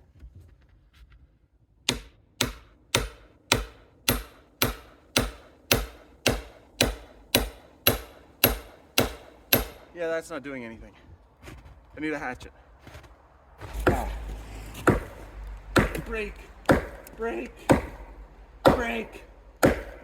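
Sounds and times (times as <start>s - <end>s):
hand tool chopping a log: 1.9s - 9.9s, 13.7s - 15.2s, 15.8s - 20.0s.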